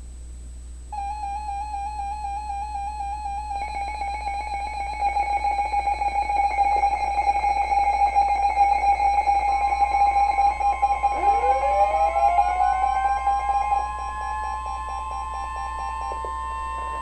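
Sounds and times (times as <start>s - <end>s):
harsh buzzing: 11.0s - 17.0s
warbling electronic alert tone: 11.1s - 17.0s.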